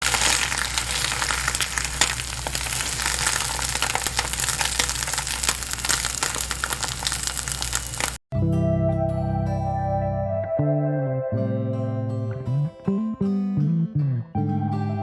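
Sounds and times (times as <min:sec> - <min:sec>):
food sizzling in oil: 0:00.0 - 0:08.2.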